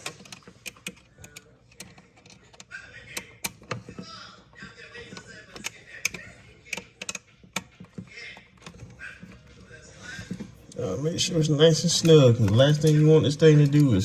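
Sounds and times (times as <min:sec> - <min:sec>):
screwdriver clicking and tapping: 0:00.0 - 0:04.0, 0:05.1 - 0:08.8.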